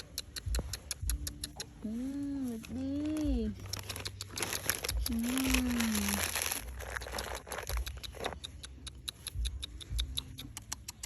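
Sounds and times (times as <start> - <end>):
crinkling and crunching handling noise: 2.0 - 8.6.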